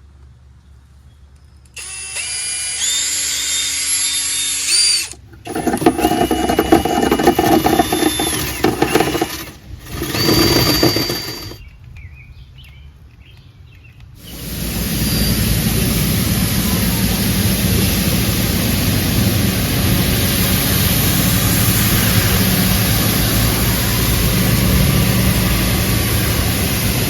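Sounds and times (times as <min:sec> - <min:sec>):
power tool wire brush whining: 0:01.8 - 0:11.6, 0:14.3 - 0:27.0
wire bristles scrubbing metal: 0:05.2 - 0:11.6.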